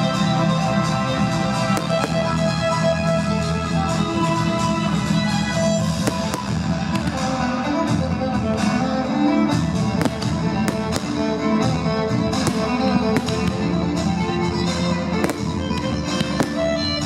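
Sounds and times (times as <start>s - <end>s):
show music with strings: 0.0s - 17.0s
firework bangs: 1.3s - 3.1s, 5.0s - 7.8s, 9.6s - 17.0s.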